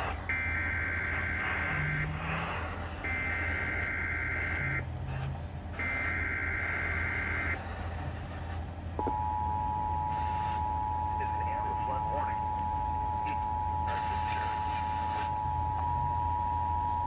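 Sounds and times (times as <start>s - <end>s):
low steady hum: 0.0s - 17.0s
two-tone attention signal: 9.0s - 17.0s.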